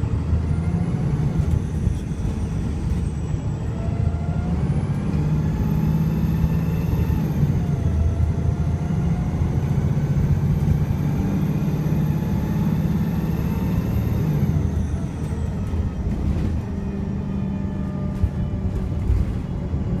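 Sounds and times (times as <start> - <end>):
bus engine pulling hard: 0.0 - 20.0.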